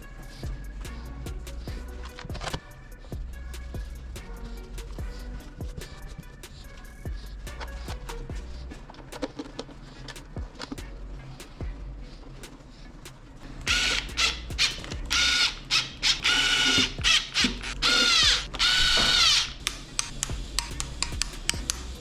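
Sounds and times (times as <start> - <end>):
hand tool clicks: 19.0 - 21.9.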